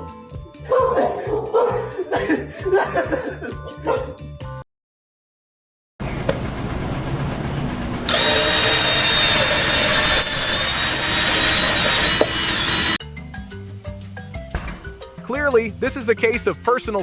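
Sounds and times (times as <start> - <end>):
machine rumbling: 6.0 - 13.0
machine whining loudly: 6.5 - 13.0.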